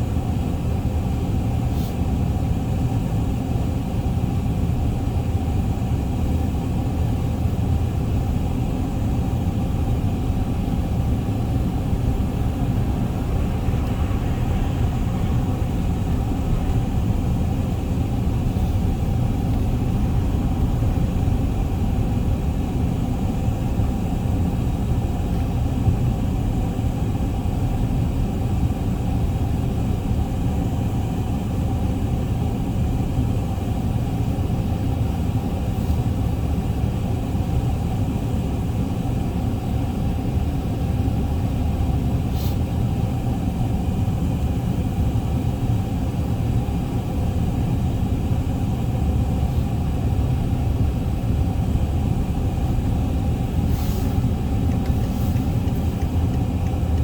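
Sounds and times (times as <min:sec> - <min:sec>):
steady low rumbling: 0:06.9 - 0:29.5, 0:46.3 - 0:57.0.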